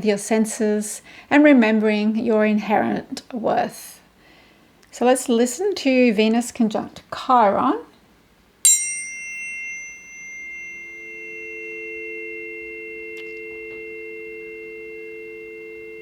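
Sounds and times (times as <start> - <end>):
clear high tones ringing: 8.6 - 16.0
tuning fork struck: 8.6 - 16.0
lower steady tones: 8.7 - 16.0.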